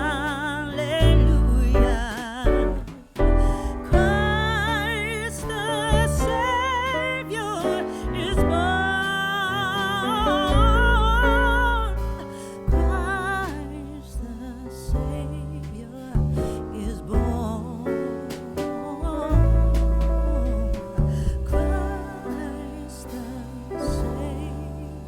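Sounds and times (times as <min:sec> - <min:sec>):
music with strong bass: 0:00.0 - 0:25.0.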